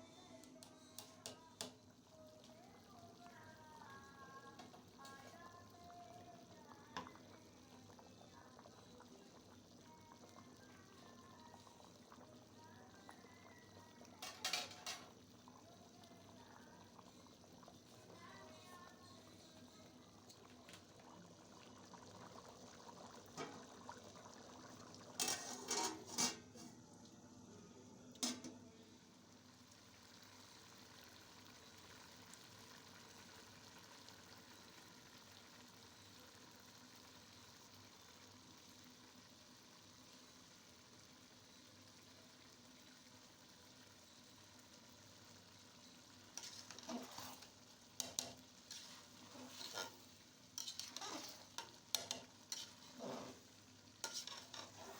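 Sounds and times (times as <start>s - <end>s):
food sizzling in a pot: 0.0s - 54.9s
spoon scraping a pot: 14.2s - 15.1s, 25.2s - 26.8s, 45.8s - 54.9s.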